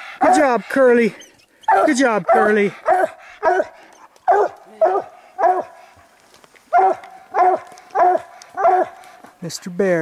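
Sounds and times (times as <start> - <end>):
dog barking: 0.2 - 0.5, 1.7 - 5.8, 6.7 - 9.0.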